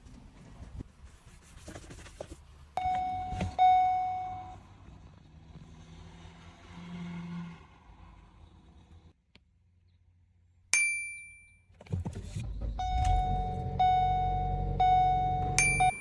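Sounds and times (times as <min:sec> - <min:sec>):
ringing ding: 0:10.8 - 0:11.6, 0:15.5 - 0:16.0
car engine idling: 0:11.9 - 0:16.0
chime tone: 0:12.9 - 0:16.0.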